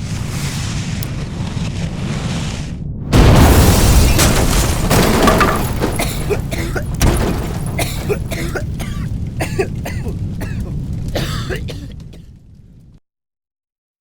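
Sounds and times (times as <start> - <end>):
fireworks blast rumble: 0.0 - 13.0
fireworks crackles and pops: 0.0 - 13.0.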